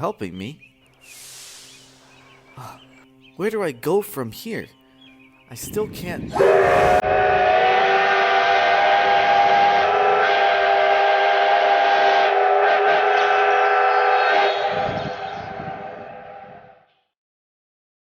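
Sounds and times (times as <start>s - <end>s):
steam locomotive whistle: 6.3s - 16.6s.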